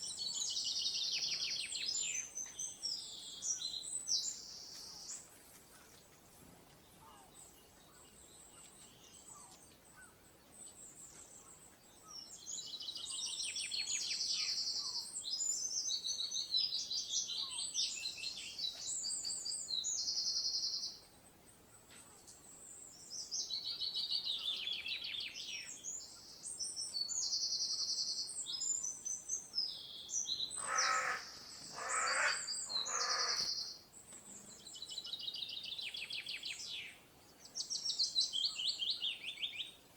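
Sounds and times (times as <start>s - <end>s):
songbirds singing: 0.0s - 39.9s
harsh low bird calls: 30.5s - 33.7s.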